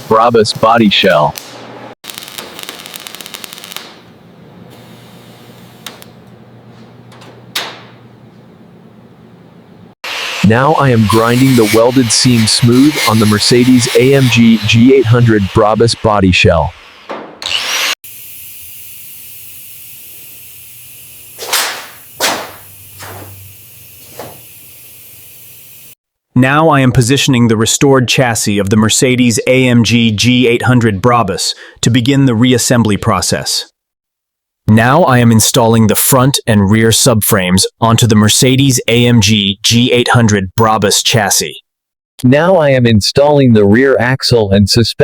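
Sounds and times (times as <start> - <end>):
welding arc crackle: 1.3 - 6.3, 16.8 - 26.0.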